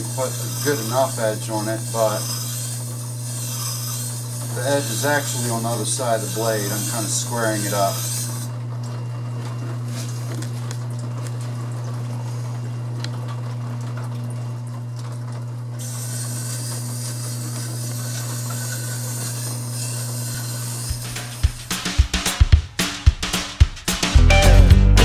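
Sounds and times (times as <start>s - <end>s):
blade grinding on stone: 0.0s - 8.5s, 15.8s - 21.5s
sharpening wheel humming: 0.0s - 8.5s, 15.8s - 22.0s.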